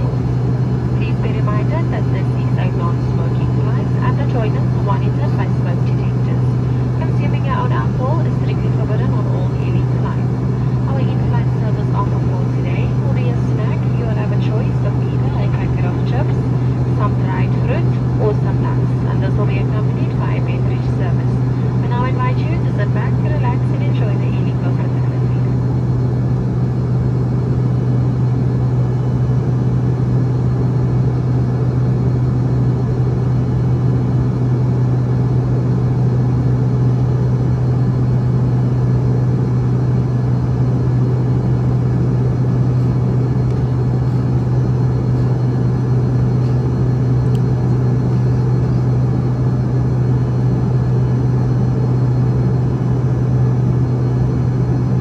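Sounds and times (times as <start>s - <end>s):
jet engine drone in airliner cabin: 0.0s - 55.0s.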